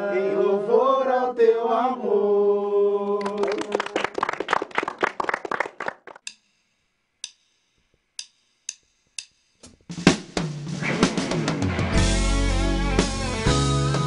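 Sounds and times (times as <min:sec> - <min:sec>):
drumstick or hi-hat clicks: 0:06.2 - 0:10.6
run of sharp drum strikes: 0:06.3 - 0:12.3
band with drum kit and bass: 0:09.9 - 0:14.0.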